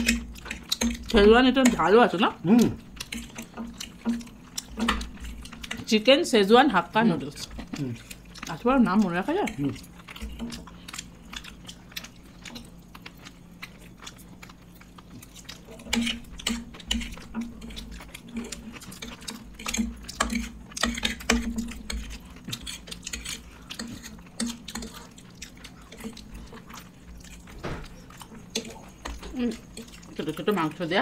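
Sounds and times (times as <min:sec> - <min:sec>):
chewing and mouth noises: 0:00.0 - 0:06.0, 0:06.8 - 0:31.0
steady low hum: 0:00.0 - 0:31.0
clatter of plates and utensils: 0:27.3 - 0:30.0.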